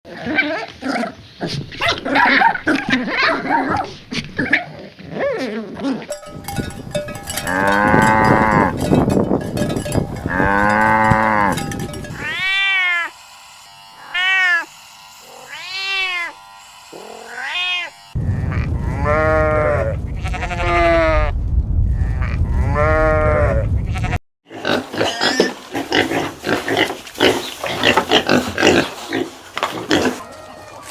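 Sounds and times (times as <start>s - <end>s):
long drawn-out animal calls: 14.0s - 18.0s.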